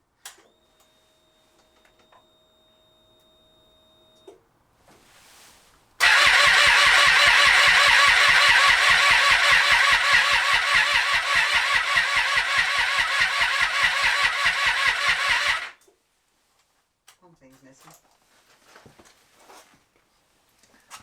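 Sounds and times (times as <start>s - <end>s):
motorcycle engine cranking: 6.0s - 15.8s.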